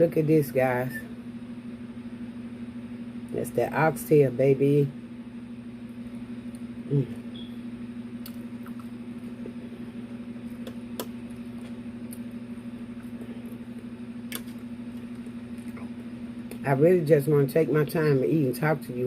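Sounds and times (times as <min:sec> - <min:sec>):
steady low hum: 0:00.0 - 0:19.0
person humming mm: 0:06.8 - 0:07.2.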